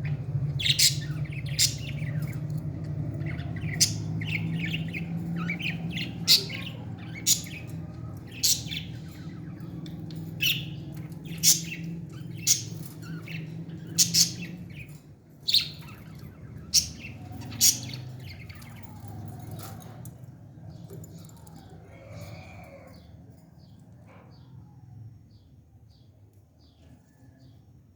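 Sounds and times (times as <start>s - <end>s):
baby parrot calling: 3.3s - 9.1s, 13.9s - 14.5s.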